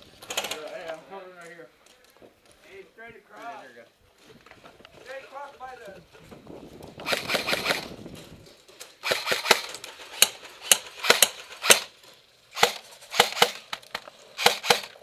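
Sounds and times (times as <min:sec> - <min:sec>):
airsoft guns firing: 0:07.0 - 0:07.9, 0:09.0 - 0:15.0.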